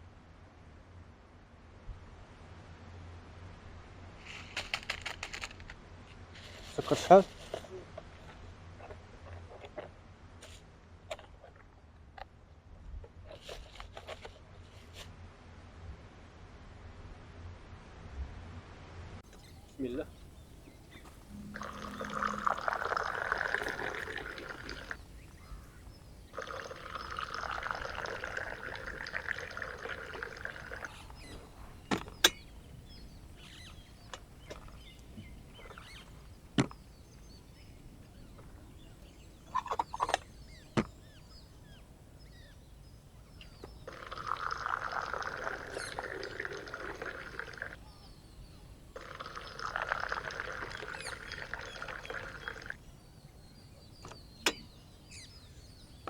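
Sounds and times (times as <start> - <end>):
tea pouring into glasses: 19.4 - 33.1, 43.8 - 48.2, 48.9 - 52.8.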